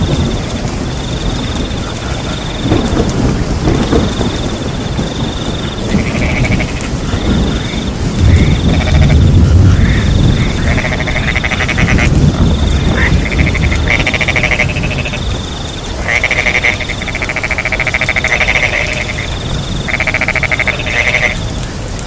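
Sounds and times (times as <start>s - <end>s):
low rumble: 0.0s - 15.5s
crickets trilling: 0.0s - 22.0s
frogs croaking in chorus: 0.0s - 22.0s.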